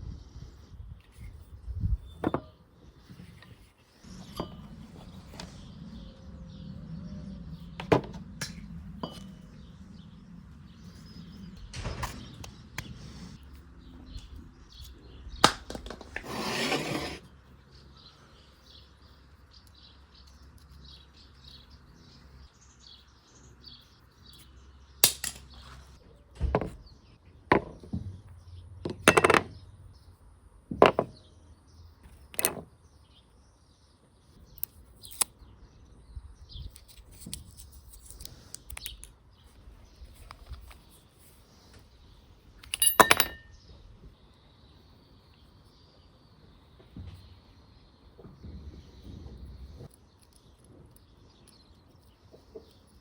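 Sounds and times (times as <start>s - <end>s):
metal parts knocking on workbench: 27.5s - 28.2s, 28.8s - 29.6s, 30.7s - 31.2s, 42.6s - 43.5s.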